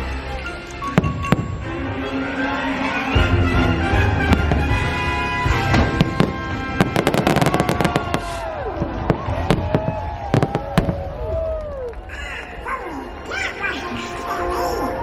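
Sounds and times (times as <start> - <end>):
orchestral music: 0.0 - 9.7
fireworks bangs and crackles: 0.8 - 2.0, 3.2 - 11.8.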